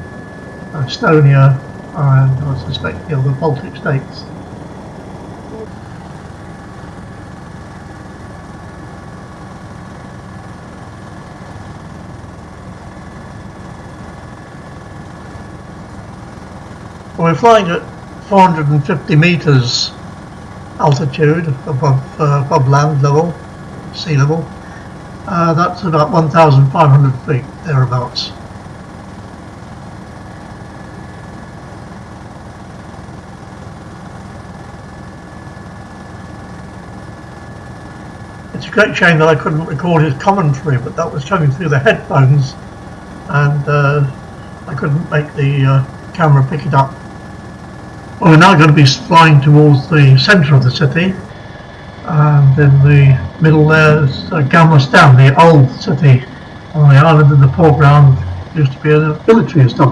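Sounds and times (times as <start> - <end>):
faint high whines: 0.0 - 59.9
helicopter rotor and engine drone: 0.0 - 59.9.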